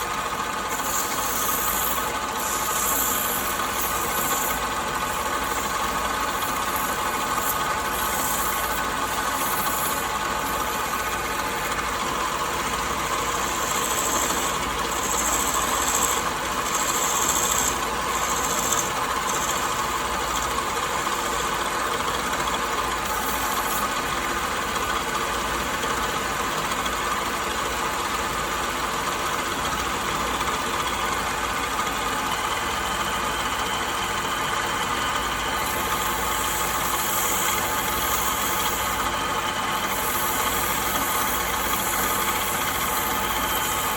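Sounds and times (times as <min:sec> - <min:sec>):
power tool motor working wood: 0:00.0 - 0:24.1, 0:35.4 - 0:43.9.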